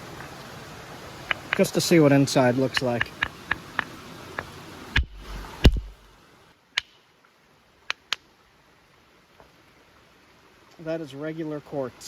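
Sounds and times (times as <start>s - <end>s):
antler knocking on stone: 2.7s - 6.0s.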